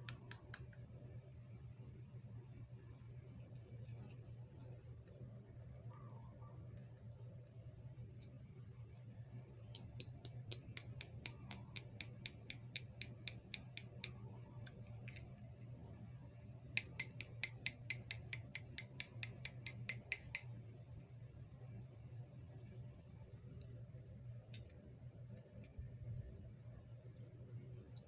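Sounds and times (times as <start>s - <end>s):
rapid small clicks: 0.0s - 1.2s, 7.4s - 15.8s, 16.6s - 20.6s.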